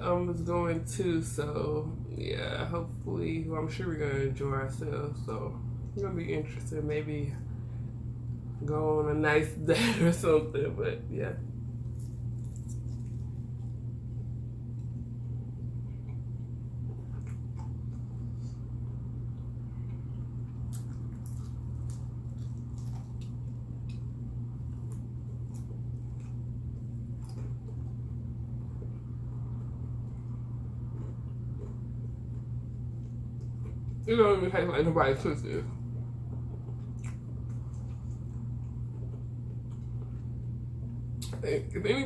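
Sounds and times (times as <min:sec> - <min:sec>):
steady low hum: 0:00.0 - 0:42.0
person chewing food: 0:11.7 - 0:34.1, 0:35.8 - 0:41.3.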